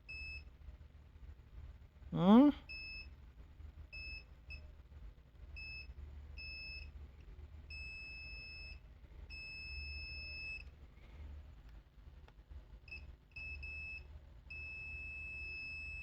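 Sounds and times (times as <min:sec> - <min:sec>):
faint low hum: 0:00.0 - 0:16.0
multimeter beeps: 0:00.1 - 0:00.5, 0:02.7 - 0:03.2, 0:03.9 - 0:04.7, 0:05.5 - 0:07.0, 0:07.6 - 0:10.7, 0:12.8 - 0:16.0.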